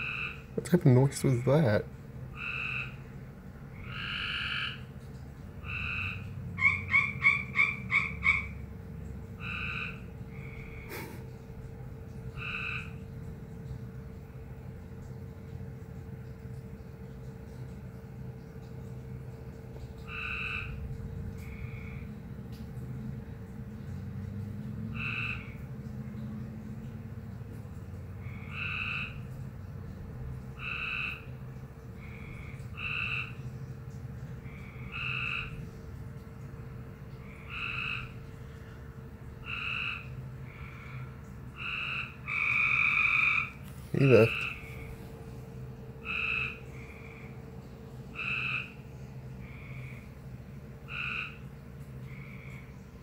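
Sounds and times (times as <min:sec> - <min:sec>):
frog calling: 0:00.0 - 0:03.1, 0:03.7 - 0:08.7, 0:09.4 - 0:11.2, 0:12.3 - 0:13.2, 0:19.9 - 0:22.2, 0:24.9 - 0:25.6, 0:28.1 - 0:29.4, 0:30.5 - 0:33.5, 0:34.3 - 0:35.7, 0:37.1 - 0:38.6, 0:39.4 - 0:45.1, 0:45.8 - 0:53.0.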